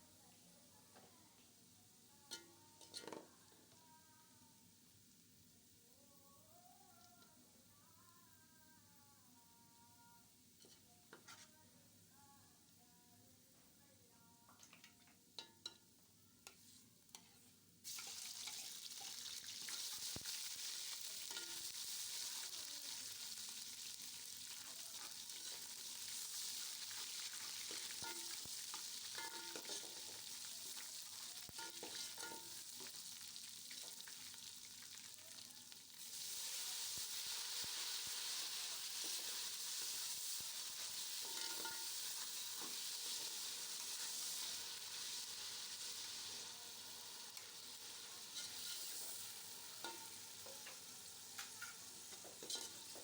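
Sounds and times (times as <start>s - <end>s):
food sizzling in hot oil: 2.2s - 3.9s, 16.5s - 53.0s
spoon scraping a pot: 2.3s - 3.3s, 10.6s - 11.6s, 21.3s - 21.7s, 26.3s - 30.9s, 31.5s - 32.9s, 40.9s - 44.2s, 48.2s - 53.0s.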